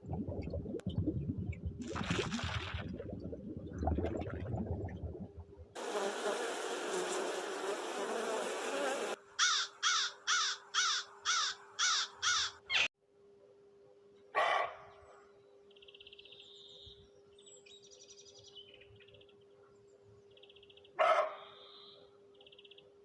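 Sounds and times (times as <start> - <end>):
low rough rumbling: 0.0 - 5.8
dense buzzing haze: 5.8 - 9.2
crow cawing: 9.4 - 12.7.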